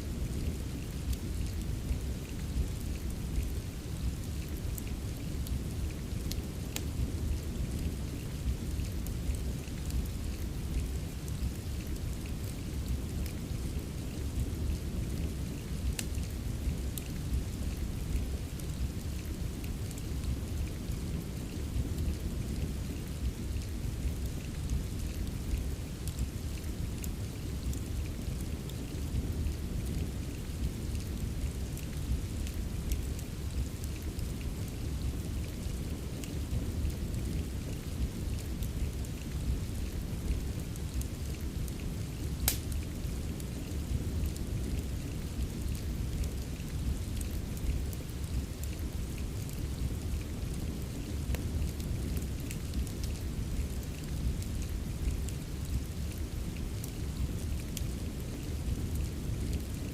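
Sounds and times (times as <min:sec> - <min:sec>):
steady rain: 0:00.0 - 0:59.9
wood fire crackling: 0:00.1 - 0:59.9.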